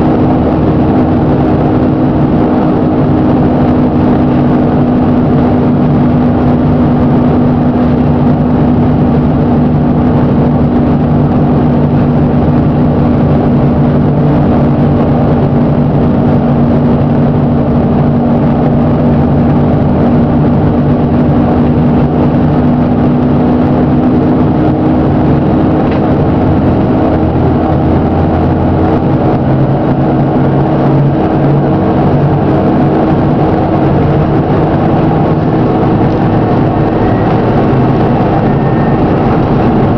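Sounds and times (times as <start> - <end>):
diesel bus engine droning: 0.0 - 39.9.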